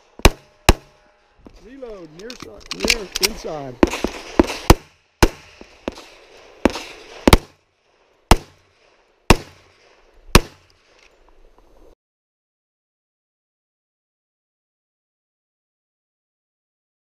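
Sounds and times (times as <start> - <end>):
pistol shots: 0.2 - 0.9, 2.7 - 7.6, 8.3 - 8.7, 9.3 - 10.7.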